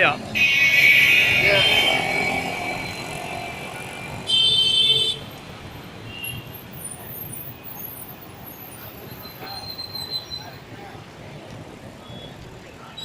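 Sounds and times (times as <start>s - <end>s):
traffic: 0.0s - 13.0s
vehicle horn honk: 0.4s - 2.1s.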